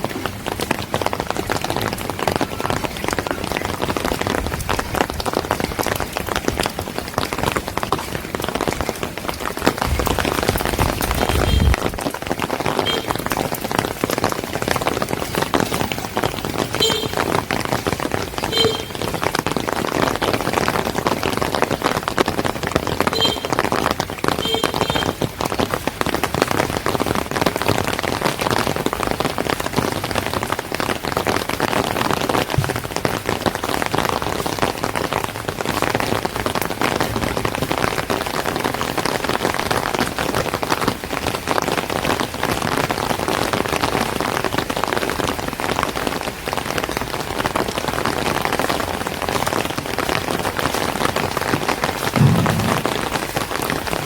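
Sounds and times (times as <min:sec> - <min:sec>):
rain on street: 0:00.0 - 0:54.0
short low thump: 0:52.2 - 0:53.5.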